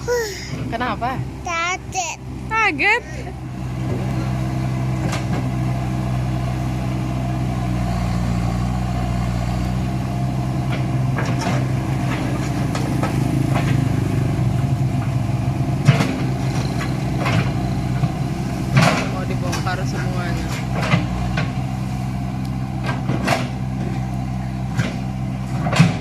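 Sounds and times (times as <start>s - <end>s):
excavator diesel engine running: 0.0s - 26.0s
sharp knocks and clatters: 10.6s - 13.9s, 15.8s - 21.6s, 22.8s - 23.6s, 24.7s - 26.0s.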